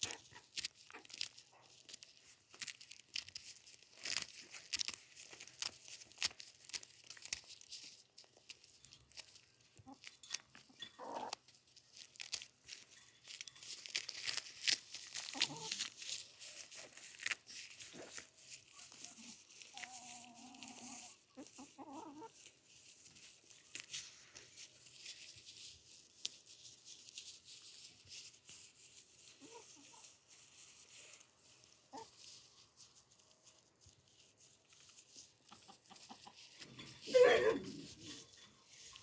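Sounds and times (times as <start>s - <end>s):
crackling and rustling: 0.0s - 39.0s
chickens clucking: 20.4s - 22.3s, 35.4s - 38.1s.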